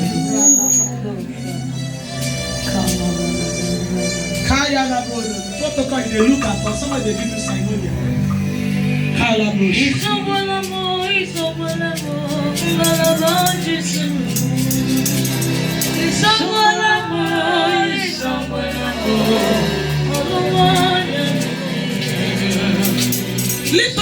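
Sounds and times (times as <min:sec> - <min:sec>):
bass: 0:00.0 - 0:24.0
keyboard chords: 0:01.1 - 0:24.0
light percussion ticking: 0:05.6 - 0:08.9, 0:09.9 - 0:18.2
person singing long notes: 0:09.8 - 0:24.0.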